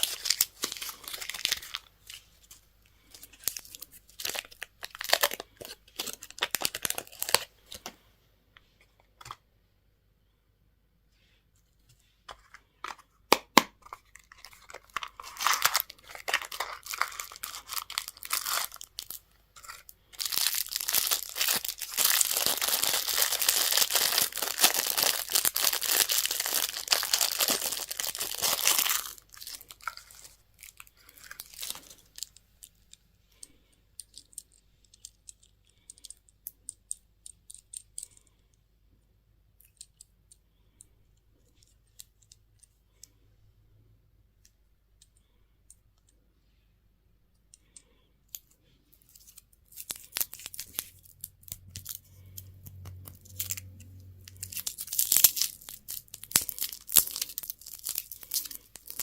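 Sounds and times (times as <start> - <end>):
candy wrapper tearing and crinkling: 0.0 - 7.8, 13.5 - 38.2, 48.3 - 59.0.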